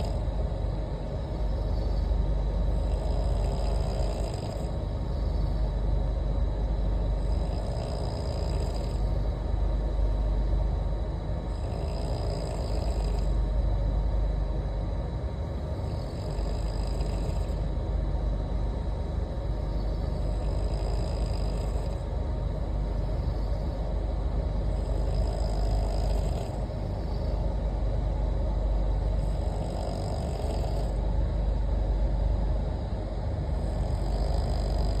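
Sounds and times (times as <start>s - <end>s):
person snoring: 0.0s - 5.8s, 7.0s - 9.3s, 11.4s - 13.4s, 15.6s - 17.7s, 19.6s - 22.1s, 24.5s - 27.4s, 29.1s - 31.1s, 32.6s - 35.0s.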